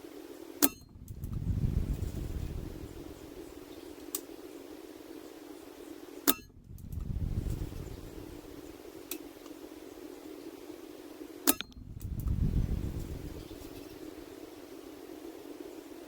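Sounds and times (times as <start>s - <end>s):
steady low hum: 0.0s - 16.0s
faint clicks: 0.6s - 2.1s, 4.0s - 4.4s, 6.2s - 9.6s.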